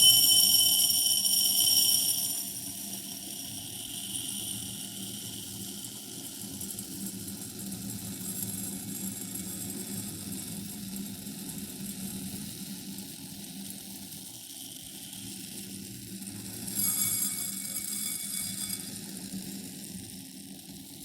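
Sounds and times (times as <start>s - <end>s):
glass bowl ringing: 0.0s - 2.6s, 16.7s - 19.1s
grain pouring into glass bowl: 0.0s - 5.7s, 16.3s - 19.8s.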